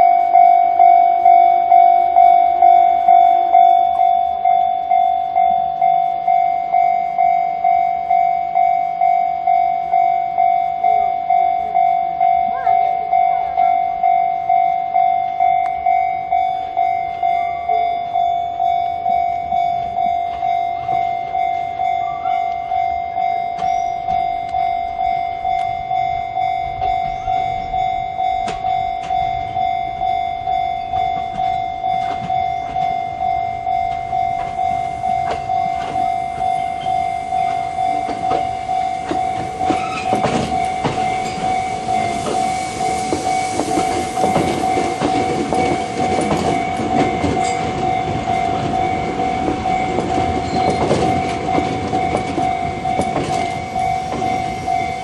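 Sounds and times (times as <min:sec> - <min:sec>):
level crossing alarm ringing: 0:00.0 - 0:55.0
train running noise: 0:00.0 - 0:55.0
wheel clicks over rail joints: 0:30.9 - 0:42.5.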